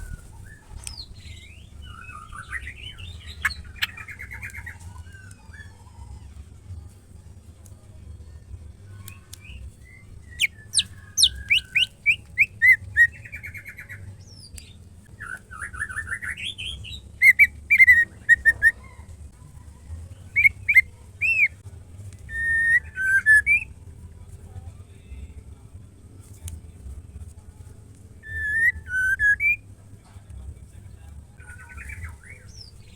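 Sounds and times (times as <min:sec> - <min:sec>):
bird singing whistled phrases: 0:09.4 - 0:14.0, 0:15.2 - 0:18.8, 0:20.4 - 0:21.6, 0:22.3 - 0:23.7, 0:28.2 - 0:29.6.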